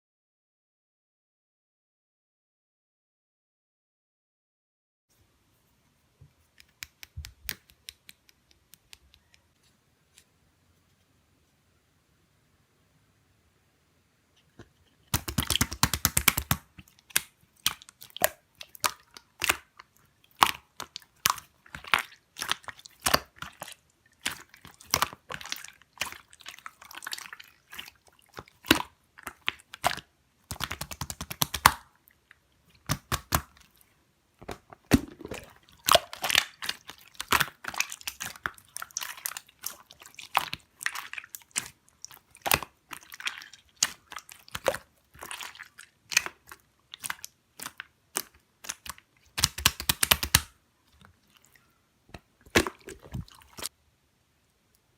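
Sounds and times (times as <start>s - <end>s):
slime crackling and popping: 15.1s - 31.8s, 32.8s - 33.6s, 34.4s - 50.5s.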